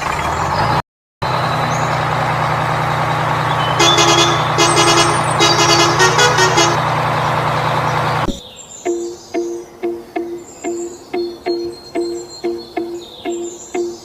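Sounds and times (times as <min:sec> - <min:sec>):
truck engine running: 0:00.0 - 0:14.0
truck horn honking: 0:03.2 - 0:08.2.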